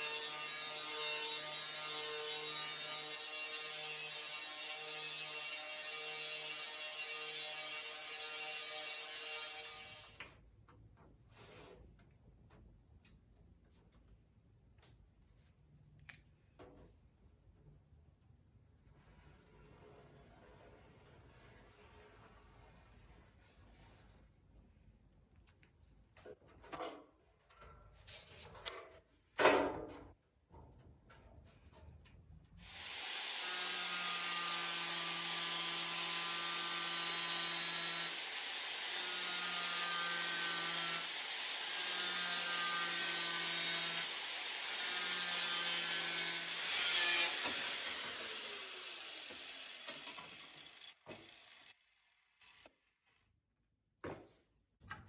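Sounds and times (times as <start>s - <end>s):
power cutting tool on steel: 0.0s - 10.3s, 32.6s - 53.2s.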